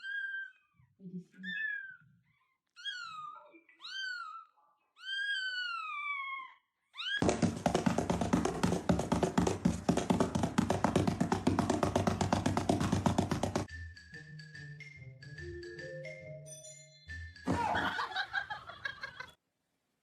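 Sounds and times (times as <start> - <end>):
cat meowing: 0.0 - 0.7, 2.8 - 7.2
fast taps and thumps: 7.2 - 13.7.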